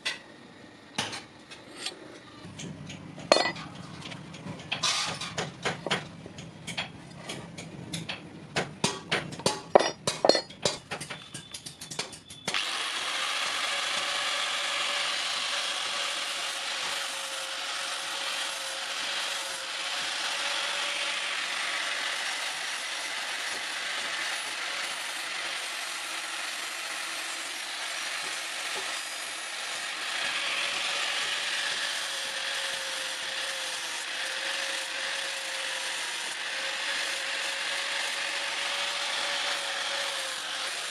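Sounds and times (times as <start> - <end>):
metal abrading knife blade: 1.0 - 2.3, 3.2 - 3.7, 9.7 - 12.3
metallic taps and clinks: 2.9 - 3.8, 9.4 - 12.5.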